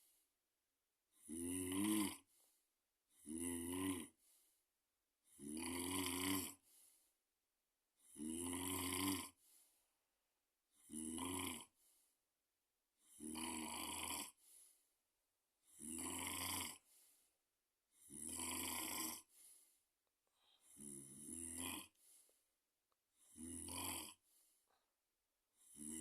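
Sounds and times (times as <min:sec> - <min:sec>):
loud snoring: 0:01.1 - 0:02.4, 0:03.1 - 0:04.2, 0:05.2 - 0:06.7, 0:08.0 - 0:09.5, 0:10.7 - 0:11.9, 0:13.0 - 0:14.7, 0:15.6 - 0:17.1, 0:17.9 - 0:19.7, 0:20.6 - 0:22.3, 0:23.2 - 0:24.5, 0:25.6 - 0:26.0
faint breath: 0:02.2 - 0:02.7, 0:04.2 - 0:04.6, 0:06.6 - 0:07.2, 0:09.4 - 0:10.0, 0:11.7 - 0:12.2, 0:14.4 - 0:14.9, 0:16.8 - 0:17.4, 0:19.2 - 0:20.9, 0:21.9 - 0:22.6, 0:24.1 - 0:24.9.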